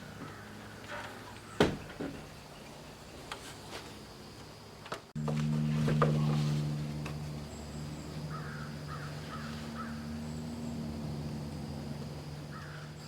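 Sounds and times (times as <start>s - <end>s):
faint bird calls: 0.0s - 2.9s, 7.5s - 11.5s, 12.2s - 13.0s
steady low hum: 0.0s - 13.0s.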